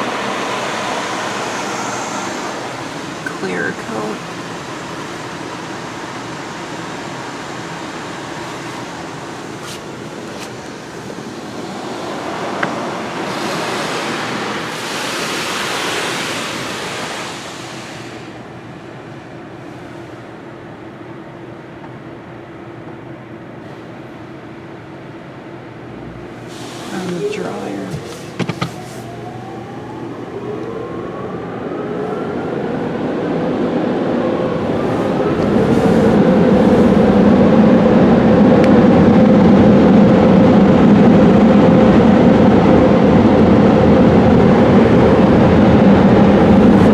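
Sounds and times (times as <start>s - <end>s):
car wash water jets hissing: 0.0s - 21.2s, 26.4s - 29.9s, 31.7s - 46.9s
dryer blowers rushing air: 0.0s - 22.4s, 26.2s - 46.9s.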